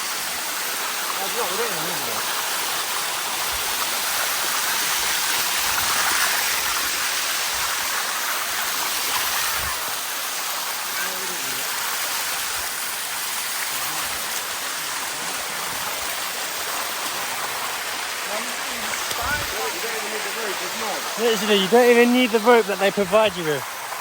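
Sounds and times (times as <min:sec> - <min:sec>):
waterfall rushing: 0:00.0 - 0:24.0
faint voices: 0:18.2 - 0:23.6.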